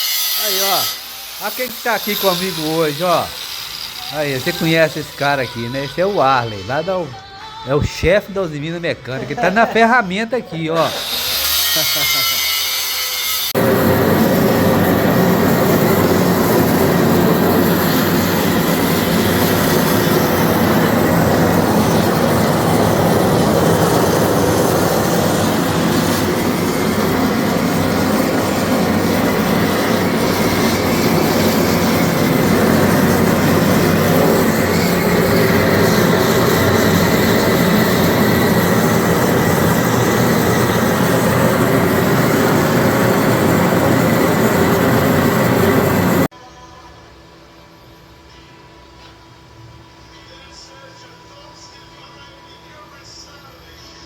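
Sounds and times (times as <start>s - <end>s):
power tool grinding: 0.0s - 6.0s, 10.8s - 46.3s.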